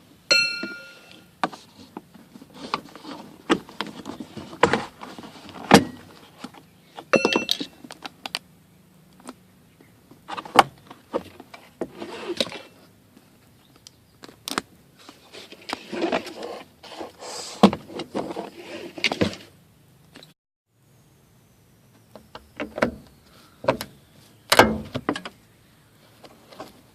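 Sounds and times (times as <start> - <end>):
rustling: 0.5 - 7.1.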